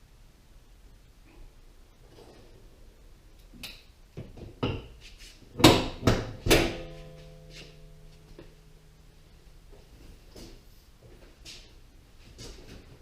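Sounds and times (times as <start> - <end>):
metallic ring: 6.6 - 9.3.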